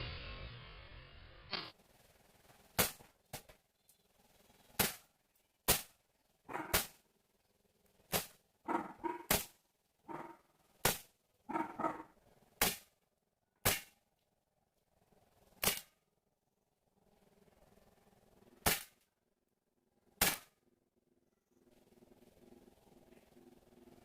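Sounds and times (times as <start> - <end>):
air pistol shots: 6.6 - 7.0, 15.6 - 15.9, 20.2 - 20.5.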